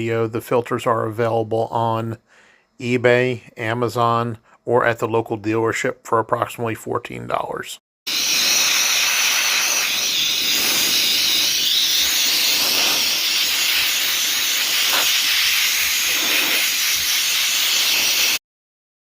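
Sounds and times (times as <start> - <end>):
rushing air hiss: 8.1 - 18.4.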